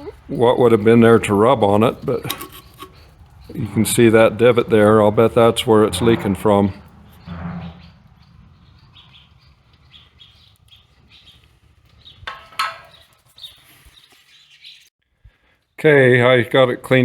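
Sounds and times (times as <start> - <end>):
pipe scraping knocks: 5.1 - 8.3, 12.2 - 13.2
small bird chirping: 7.0 - 14.9.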